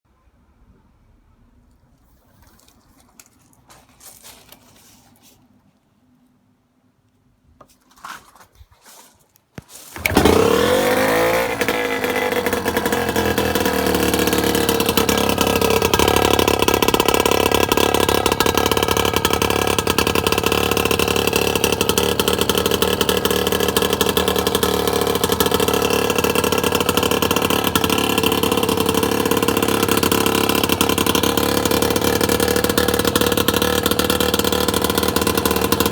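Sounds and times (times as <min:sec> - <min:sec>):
outboard motor running: 0:09.9 - 0:35.9.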